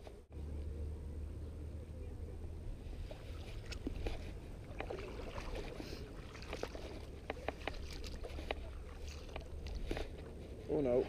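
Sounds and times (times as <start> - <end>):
steady low rumble: 0.0 - 11.0
wading through shallow water: 2.6 - 11.0.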